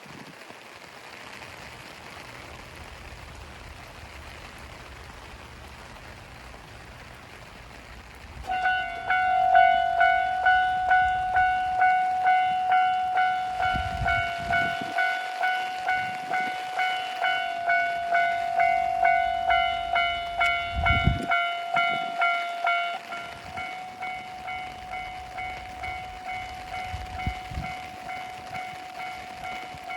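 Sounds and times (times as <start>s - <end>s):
level-crossing warning bell: 8.4s - 29.9s.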